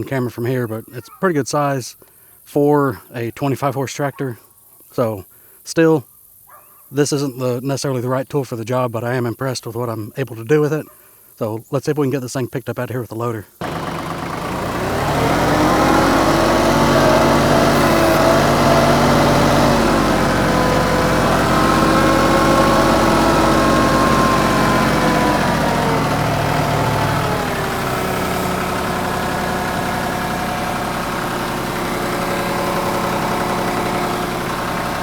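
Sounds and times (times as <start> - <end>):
tractor diesel engine revving: 13.6 - 35.0.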